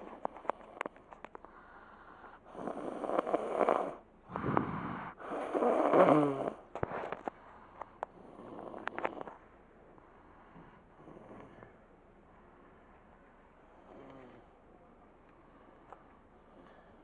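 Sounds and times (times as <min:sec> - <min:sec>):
person snoring: 0:02.5 - 0:06.6.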